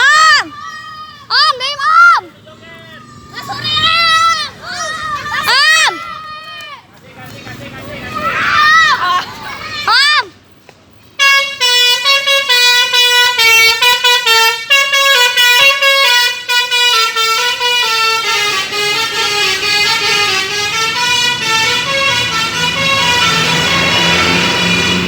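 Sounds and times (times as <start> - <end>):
multi-tone musical horn tune: 11.2 - 25.0.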